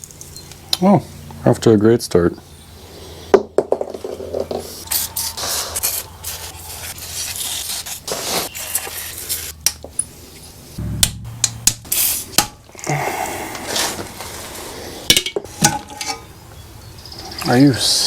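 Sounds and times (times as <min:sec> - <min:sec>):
low rumble: 0:10.8 - 0:13.0.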